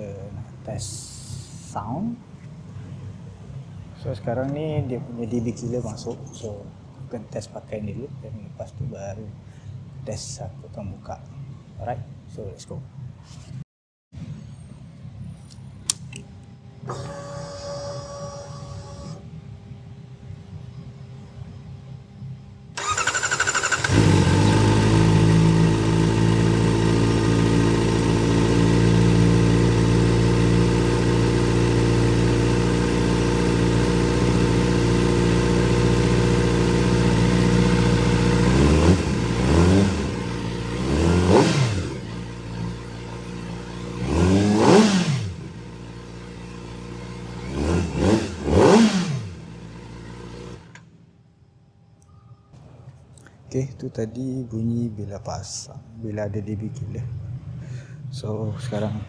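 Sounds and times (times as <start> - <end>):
motorcycle engine starting: 16.8 - 19.2, 22.8 - 51.0
motorcycle engine revving: 16.9 - 19.2, 22.8 - 50.9
motorcycle engine idling: 22.8 - 50.8.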